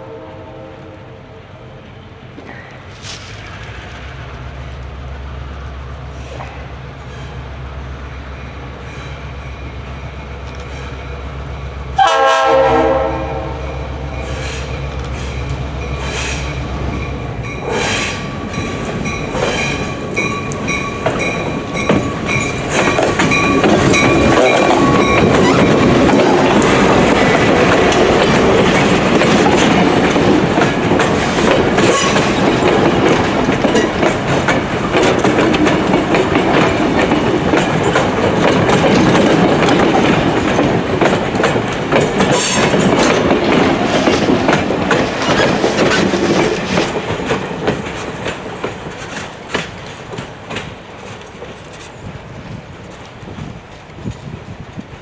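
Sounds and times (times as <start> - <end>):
locomotive air horn blast: 0.0 - 1.4, 12.0 - 14.7, 24.2 - 27.0
train wheels clicking over rail joints: 2.3 - 7.6, 14.1 - 55.0.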